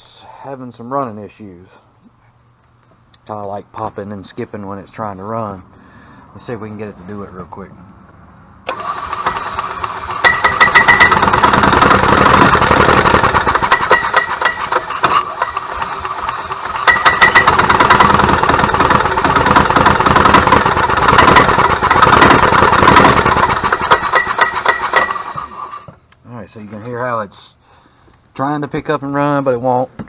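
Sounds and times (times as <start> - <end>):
golf cart engine misfiring: 8.6 - 25.9.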